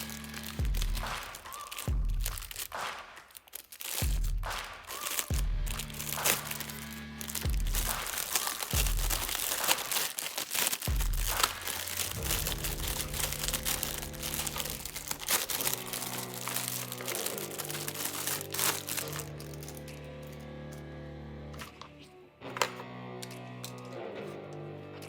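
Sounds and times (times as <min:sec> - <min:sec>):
background music with held notes: 0:00.0 - 0:03.1, 0:03.8 - 0:25.0
plastic packaging crinkling: 0:00.0 - 0:20.5
plastic toy parts clicking: 0:04.9 - 0:20.8, 0:21.6 - 0:24.1.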